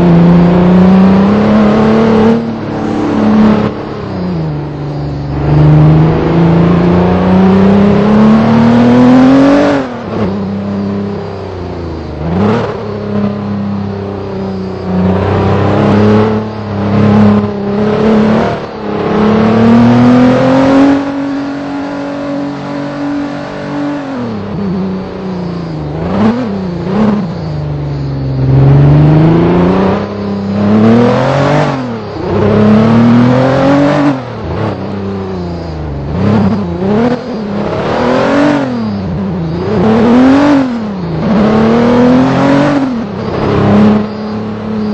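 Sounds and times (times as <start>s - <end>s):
vehicle engine revving hard: 28.2s - 35.0s, 36.0s - 44.9s.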